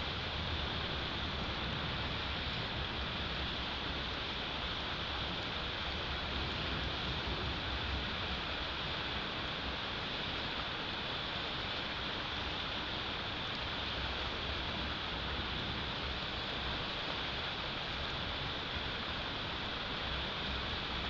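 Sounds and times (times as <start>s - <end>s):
wind gusts rumbling on microphone: 0.0s - 10.6s
wind hiss: 0.0s - 21.0s.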